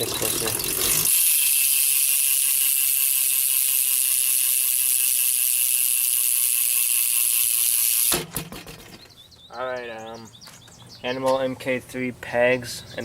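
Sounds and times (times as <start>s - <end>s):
bicycle hub freewheeling buzz: 0.0s - 8.3s.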